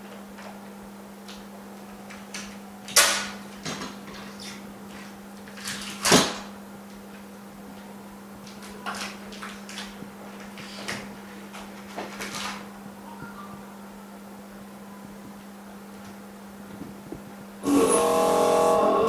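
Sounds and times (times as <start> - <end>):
steady machine hum: 12.7 - 19.0.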